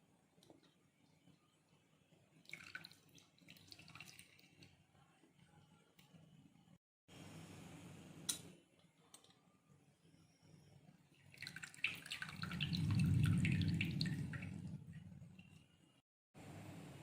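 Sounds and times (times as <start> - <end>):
lemon juice dripping into tea: 11.3 - 14.4.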